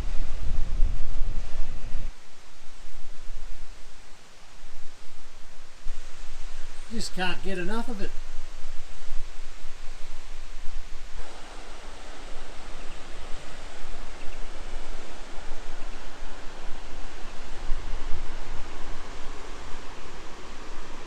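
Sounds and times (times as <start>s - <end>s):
waterfall rushing: 6.7s - 8.2s, 11.1s - 21.0s.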